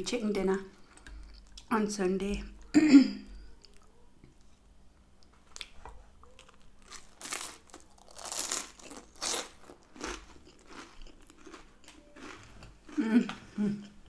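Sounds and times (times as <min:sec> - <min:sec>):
crunchy chewing: 0:05.5 - 0:14.0.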